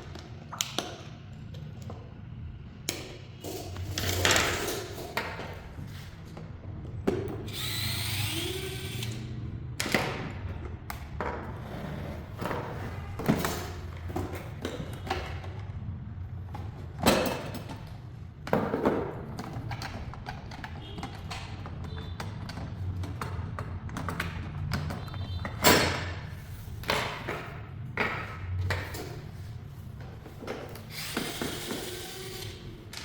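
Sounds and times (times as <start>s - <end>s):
power tool whirring: 7.4s - 9.3s, 30.8s - 32.8s.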